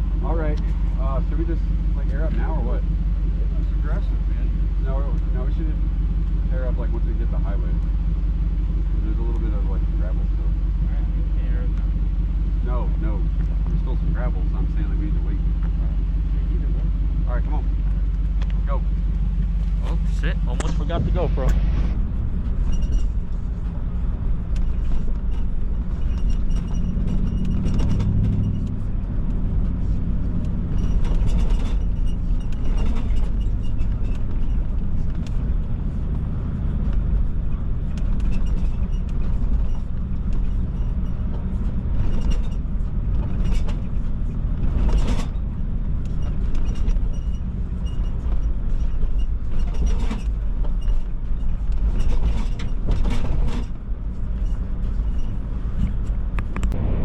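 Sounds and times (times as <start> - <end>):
vehicle engine and road rumble: 0.0 - 57.0
knocks and rattles from bumps: 17.5 - 56.8.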